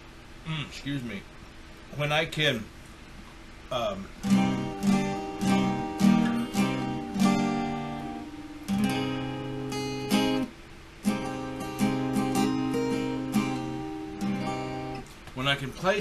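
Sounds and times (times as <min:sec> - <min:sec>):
guitar strumming chords: 0:04.2 - 0:15.0.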